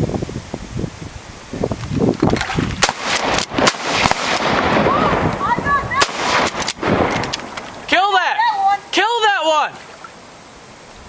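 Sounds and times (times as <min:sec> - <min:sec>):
shotgun blasts: 0:02.8 - 0:05.3, 0:06.0 - 0:07.6.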